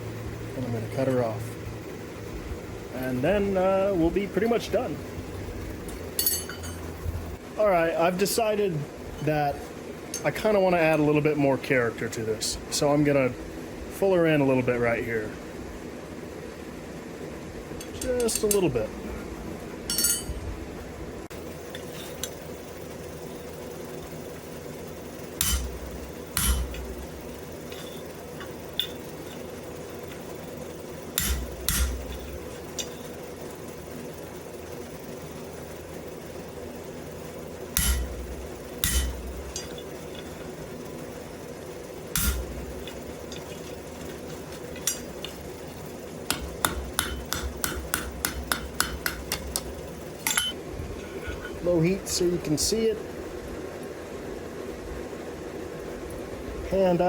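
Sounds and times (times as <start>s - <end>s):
steady hum: 0.0s - 57.0s
hammer striking iron: 6.2s - 6.9s, 19.9s - 20.4s, 25.4s - 29.4s, 31.2s - 33.0s, 37.8s - 40.3s, 42.2s - 43.6s, 46.3s - 50.6s.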